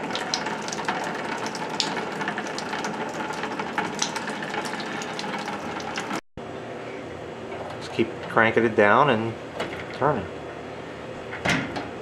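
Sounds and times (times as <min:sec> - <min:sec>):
water hissing from pipe: 0:00.0 - 0:06.2.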